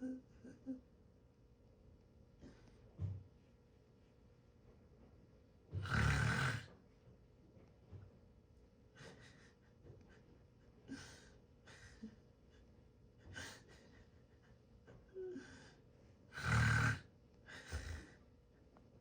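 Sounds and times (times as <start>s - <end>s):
person snoring: 5.8s - 6.7s, 16.4s - 17.1s.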